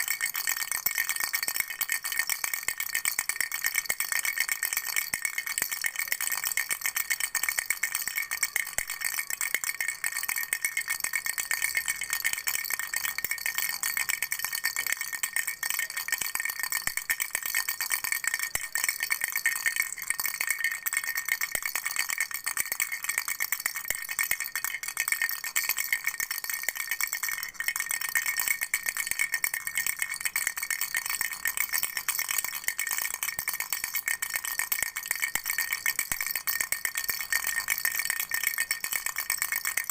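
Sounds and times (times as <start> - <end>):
baby rattle shaking: 0.0 - 39.9.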